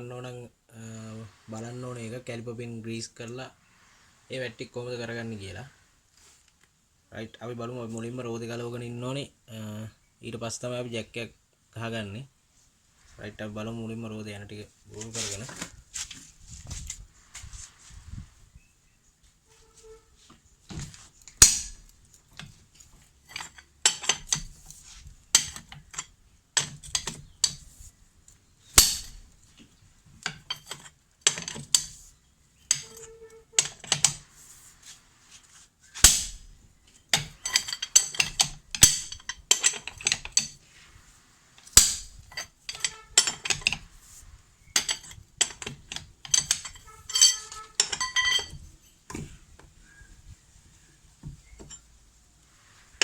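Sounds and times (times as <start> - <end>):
metal tools clanking on wheel nuts: 14.9 - 15.8, 20.6 - 34.6, 35.9 - 40.9, 41.6 - 50.1, 51.2 - 52.0.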